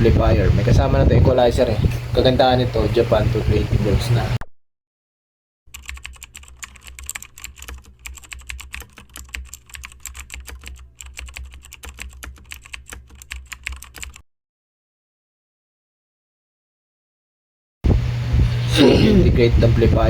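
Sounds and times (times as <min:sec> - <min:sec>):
steady low hum: 0:00.0 - 0:04.4, 0:17.9 - 0:20.0
rapid clicking and crackling: 0:05.8 - 0:14.2.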